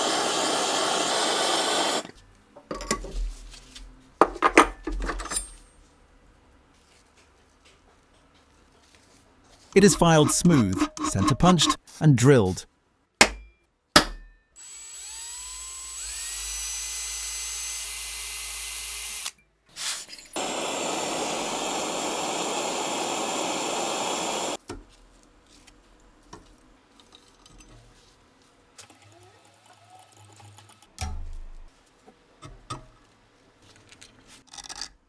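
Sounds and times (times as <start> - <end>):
electric drill drilling into steel: 0.0 - 2.1, 14.6 - 19.4, 20.4 - 24.6.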